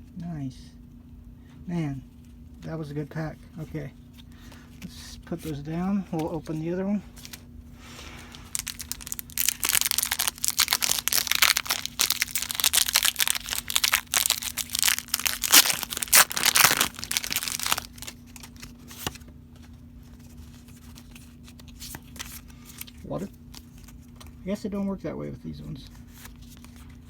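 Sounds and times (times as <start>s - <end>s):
foil wrapper crinkling: 8.1s - 19.2s.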